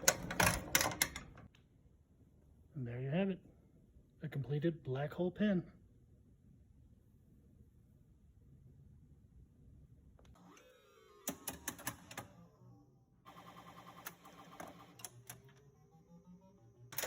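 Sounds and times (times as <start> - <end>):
pinball coil clicks: 0.0 - 1.5.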